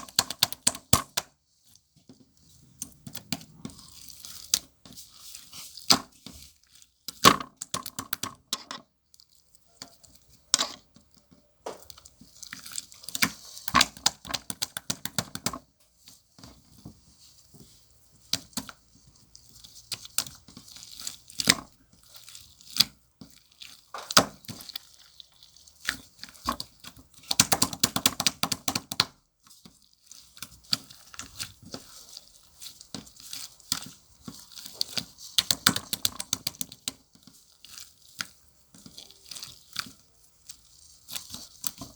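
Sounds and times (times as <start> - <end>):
slime squeezed crackling and popping: 19.5 - 41.9.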